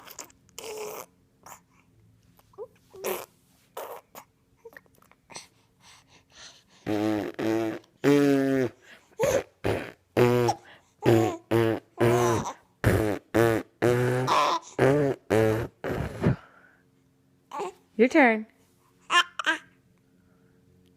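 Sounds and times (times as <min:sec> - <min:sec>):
mouth raspberry noises: 0:06.8 - 0:16.5.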